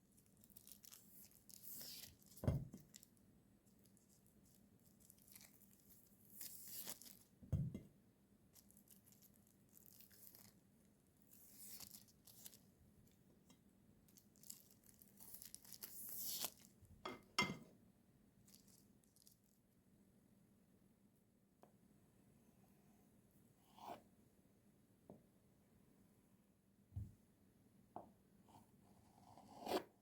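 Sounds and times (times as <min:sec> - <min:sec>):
tearing and crinkling rustles: 0:00.1 - 0:07.3, 0:08.5 - 0:10.6, 0:11.3 - 0:12.7, 0:14.1 - 0:16.8, 0:18.4 - 0:19.6.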